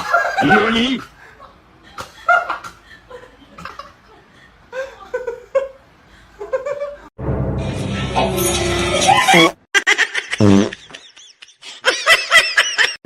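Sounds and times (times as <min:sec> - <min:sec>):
person laughing: 0:00.0 - 0:01.3, 0:08.9 - 0:13.0
noisy low rumble: 0:07.2 - 0:09.0.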